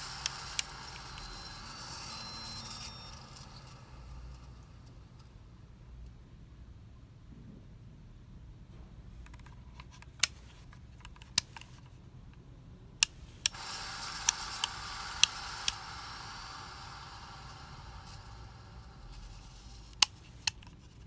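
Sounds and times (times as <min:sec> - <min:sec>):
fan bearings grinding hiss: 0:00.0 - 0:05.8, 0:13.0 - 0:21.0
ceiling fan clicks: 0:00.0 - 0:06.2, 0:13.0 - 0:21.0.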